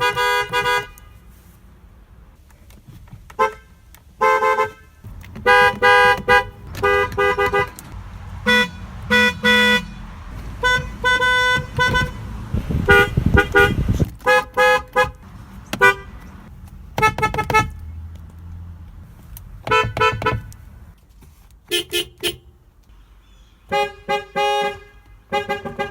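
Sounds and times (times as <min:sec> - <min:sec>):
vehicle horns honking: 0:00.0 - 0:01.4, 0:03.4 - 0:18.6, 0:19.6 - 0:21.0, 0:21.7 - 0:22.6, 0:23.6 - 0:25.9
low rumble: 0:05.0 - 0:13.3.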